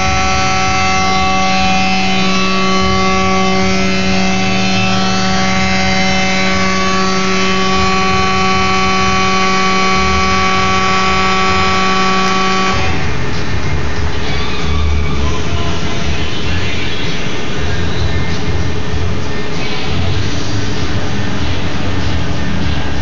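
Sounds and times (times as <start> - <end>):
loud machine hum: 0.0 - 23.0.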